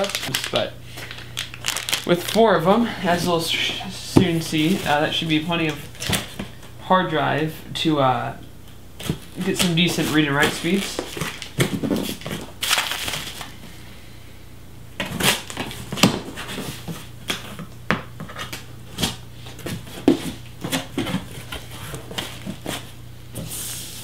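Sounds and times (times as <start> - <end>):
packing material crinkling: 0.0 - 3.6, 9.0 - 13.6.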